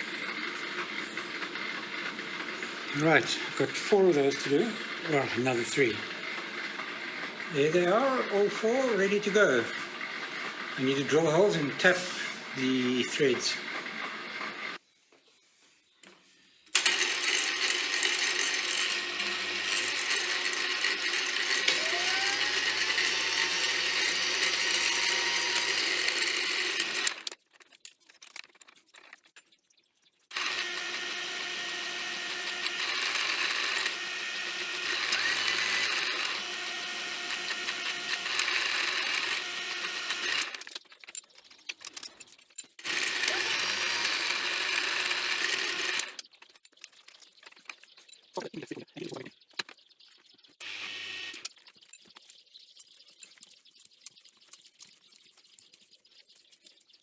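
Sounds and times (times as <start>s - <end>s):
electric drill boring steel: 0.0s - 14.8s, 16.7s - 27.4s, 30.3s - 40.8s, 42.8s - 46.3s, 50.6s - 51.5s.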